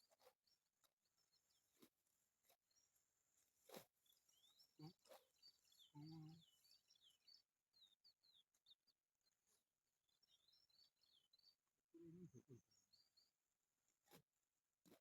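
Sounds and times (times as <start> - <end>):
small birds chirping: 0.0 - 15.0
low pitched call or voice: 5.9 - 6.4, 11.9 - 12.6.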